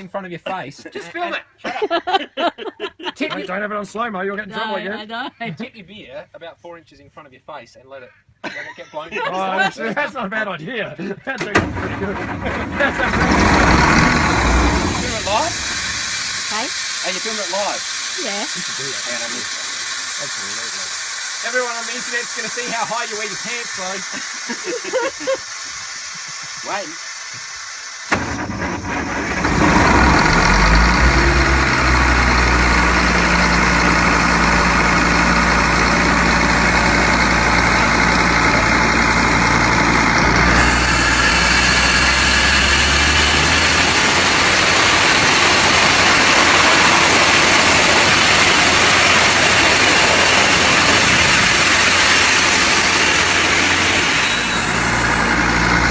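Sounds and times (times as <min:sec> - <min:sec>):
air compressor running: 0:11.6 - 0:55.9
compressed air blast: 0:13.0 - 0:35.5, 0:40.4 - 0:55.9.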